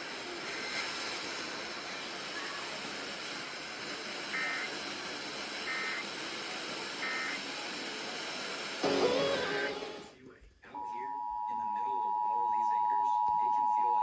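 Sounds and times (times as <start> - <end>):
steady hiss: 0.0 - 10.2.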